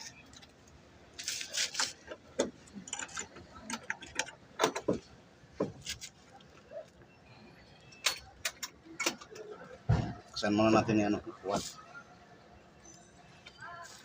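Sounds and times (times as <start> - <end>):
tools and parts clicking: 1.2 - 5.0, 7.9 - 9.6.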